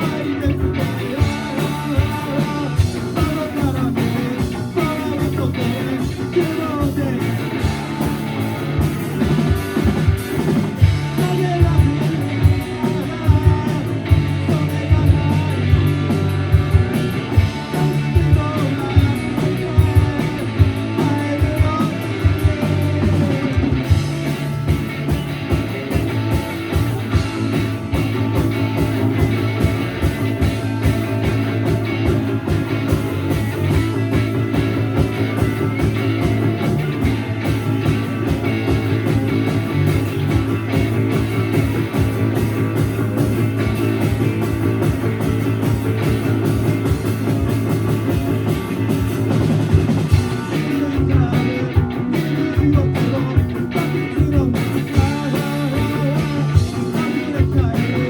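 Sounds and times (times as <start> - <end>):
live rock band playing: 0.0 - 58.0.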